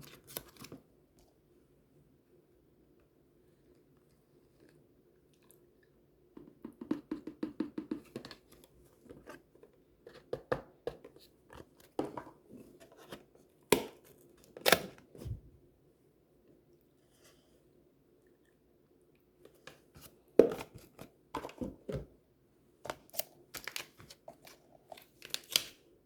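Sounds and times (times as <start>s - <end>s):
packaging crackling and crinkling: 22.9s - 25.8s.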